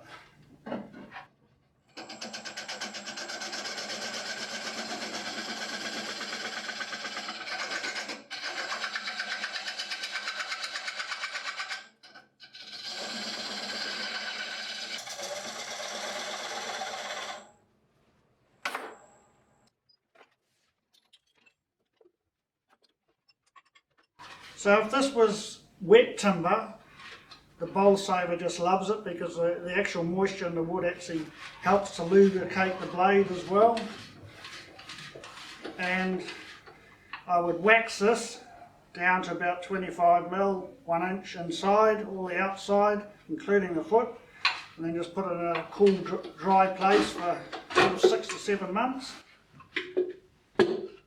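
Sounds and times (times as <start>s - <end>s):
lathe tool scraping wood: 2.0s - 11.8s, 12.4s - 17.5s, 30.3s - 36.8s.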